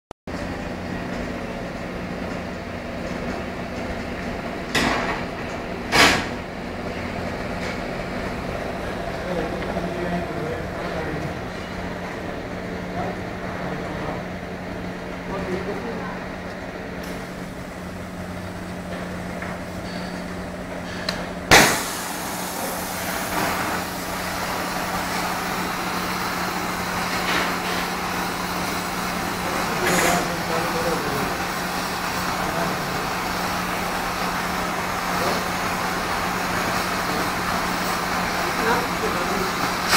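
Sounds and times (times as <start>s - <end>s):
machine humming: 0.3s - 39.9s
plasma arc firing crack: 21.5s - 25.4s
plasma arc hissing: 21.5s - 34.7s
short hissing bursts: 21.6s - 24.4s.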